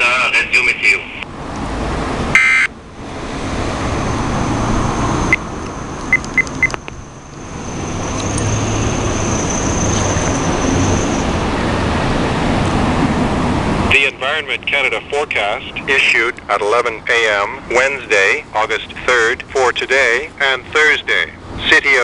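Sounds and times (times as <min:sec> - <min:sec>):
loud electronic tone: 0:02.3 - 0:02.7.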